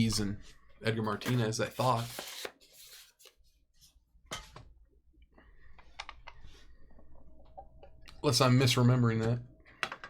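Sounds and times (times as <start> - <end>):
cards and packaging rustling: 1.1 - 3.4.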